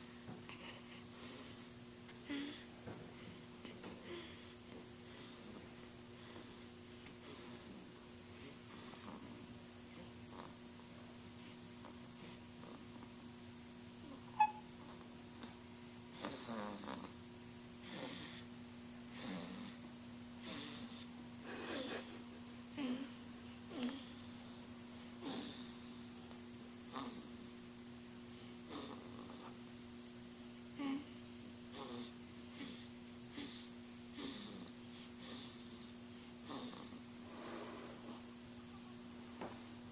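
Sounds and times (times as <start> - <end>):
steady low hum: 0.0 - 39.9
sharp high-pitched squeak: 14.4 - 14.7
raspy snore: 16.2 - 17.2, 19.1 - 19.8, 25.2 - 25.8, 26.9 - 27.3, 28.7 - 29.6, 31.7 - 32.8, 33.4 - 38.2
faint breath: 37.2 - 38.3.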